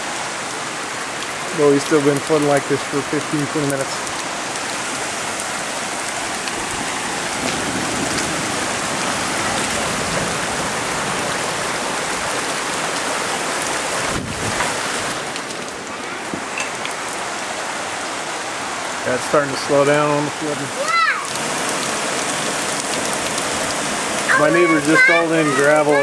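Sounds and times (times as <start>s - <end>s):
floodwater rushing: 0.0s - 26.0s
rain shower: 0.0s - 26.0s.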